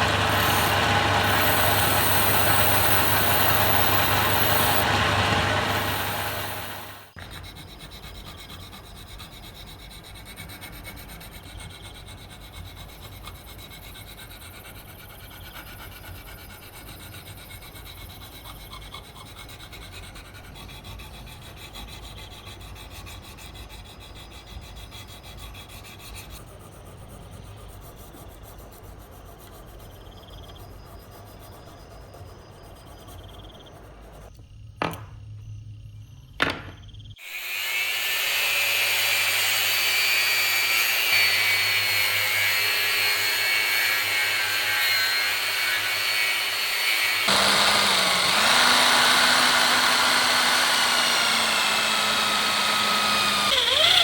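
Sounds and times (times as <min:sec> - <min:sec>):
sharp knocks: 0:34.8 - 0:35.2, 0:36.4 - 0:36.8.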